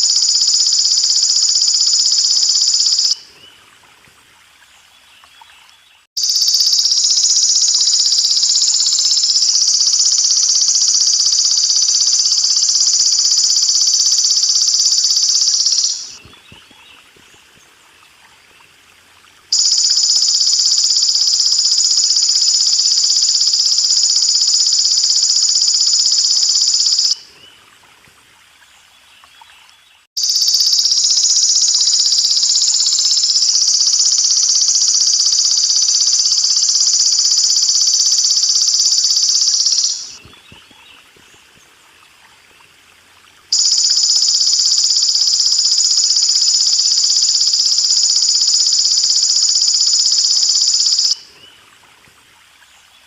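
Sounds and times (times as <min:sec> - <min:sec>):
faint running water: 0:00.0 - 0:50.2, 0:50.8 - 0:53.0
katydid stridulating buzz: 0:06.2 - 0:16.2, 0:30.2 - 0:40.2, 0:43.5 - 0:51.2.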